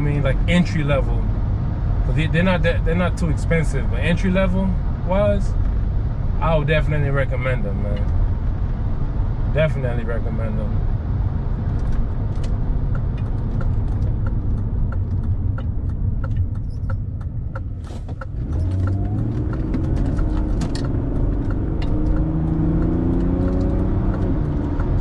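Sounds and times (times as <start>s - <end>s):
road rumble inside car: 0.0s - 25.0s
car engine accelerating: 11.6s - 25.0s
regular ticking: 12.8s - 25.0s.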